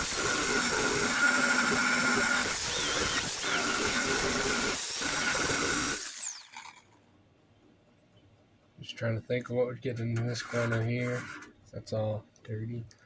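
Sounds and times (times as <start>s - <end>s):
wire wheel grinding metal: 0.0s - 6.4s
power tool winding down: 0.0s - 6.9s.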